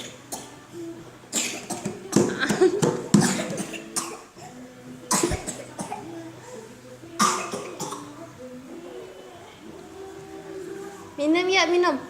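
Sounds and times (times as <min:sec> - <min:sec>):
child coughing: 0:01.3 - 0:02.3, 0:03.2 - 0:06.1, 0:07.2 - 0:08.1.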